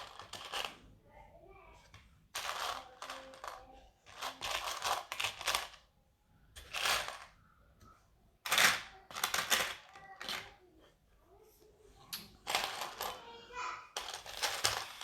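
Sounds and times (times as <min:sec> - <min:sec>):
plastic pieces clattering: 0:00.0 - 0:00.8, 0:02.4 - 0:05.9, 0:06.6 - 0:07.4, 0:08.4 - 0:10.5, 0:12.4 - 0:13.3, 0:13.9 - 0:15.0.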